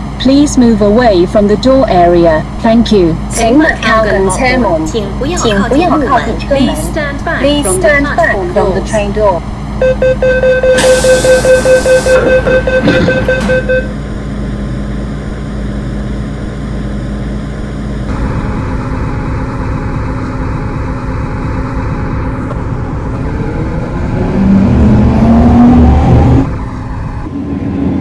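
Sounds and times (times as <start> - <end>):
traction motor whine: 0.0 - 28.0
train rumbling: 0.0 - 28.0
door-closing warning tones: 9.7 - 15.6.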